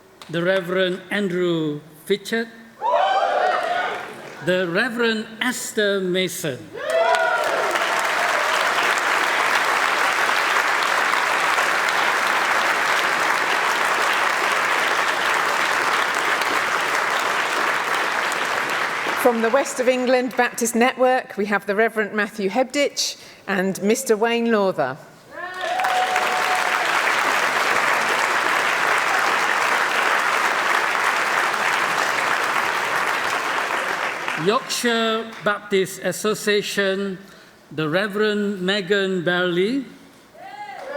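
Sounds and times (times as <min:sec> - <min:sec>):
crowd clapping: 0:06.8 - 0:20.7, 0:25.5 - 0:35.5.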